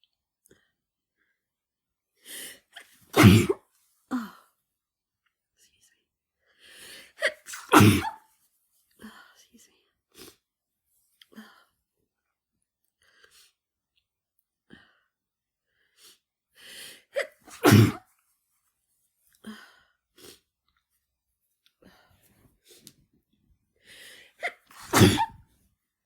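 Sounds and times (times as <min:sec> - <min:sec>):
woman sneezing: 0:03.2 - 0:04.3, 0:07.2 - 0:08.2, 0:17.2 - 0:18.0, 0:24.4 - 0:25.4
sniffs and breaths: 0:21.8 - 0:23.1, 0:23.8 - 0:25.5.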